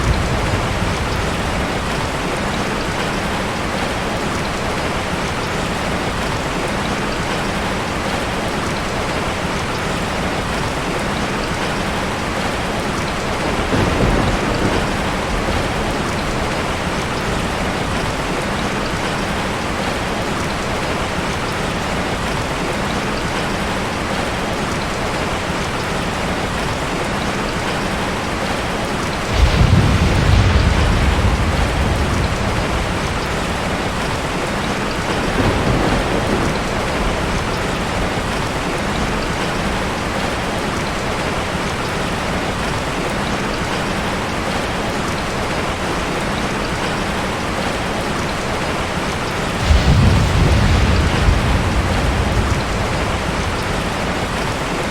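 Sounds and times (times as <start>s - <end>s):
thunder rumbling: 0.0s - 3.9s, 11.8s - 20.5s, 29.1s - 40.8s, 49.2s - 54.9s
steady rain: 0.0s - 54.9s.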